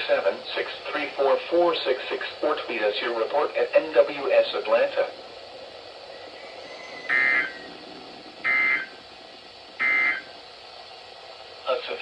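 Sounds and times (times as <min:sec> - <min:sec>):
radio hiss: 0:00.0 - 0:12.0
digital data bursts: 0:07.0 - 0:07.8, 0:08.4 - 0:09.1, 0:09.8 - 0:10.3.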